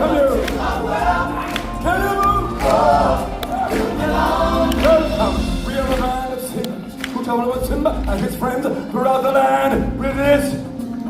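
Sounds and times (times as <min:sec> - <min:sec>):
choir singing: 0:00.0 - 0:06.8
musical accompaniment: 0:00.0 - 0:11.0.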